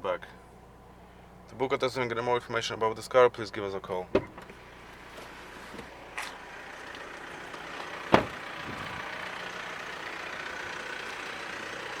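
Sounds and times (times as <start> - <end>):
vehicle hum: 0.0 - 12.0
sharp thump: 4.2 - 4.6, 8.1 - 9.0.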